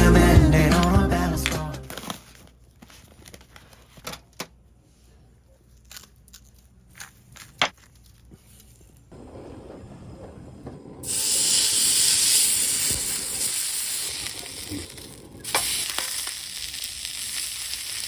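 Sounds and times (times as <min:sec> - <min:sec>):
food sizzling in a pan: 0:11.0 - 0:18.0.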